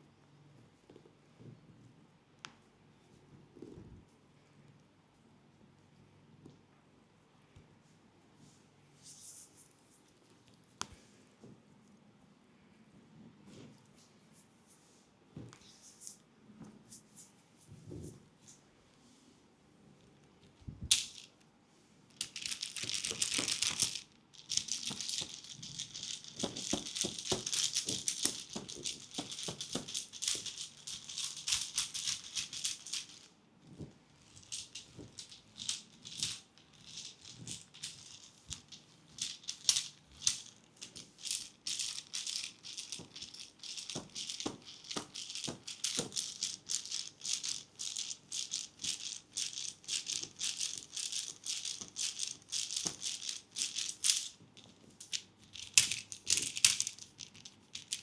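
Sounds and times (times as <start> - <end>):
shaker rattling: 9.0 - 10.8, 20.7 - 21.3, 22.1 - 58.0.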